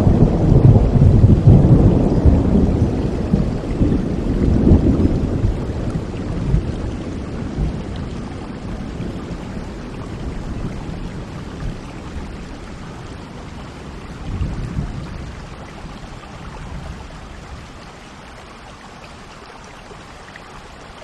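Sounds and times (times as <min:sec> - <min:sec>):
low thunder rumble: 0:00.0 - 0:17.8
steady rain: 0:00.0 - 0:21.0.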